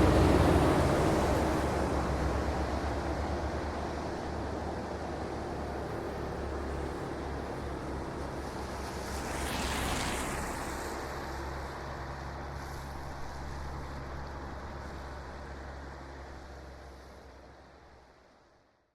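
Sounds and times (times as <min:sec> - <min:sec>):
distant traffic rumble: 0:00.0 - 0:05.4.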